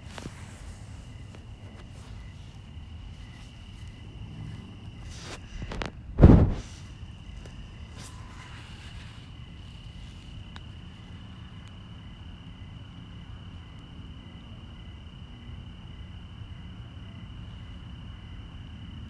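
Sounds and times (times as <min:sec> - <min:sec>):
low background rumble: 0:00.0 - 0:19.0
pulsed insect chirping: 0:00.1 - 0:18.1
insect high trill: 0:06.6 - 0:12.7.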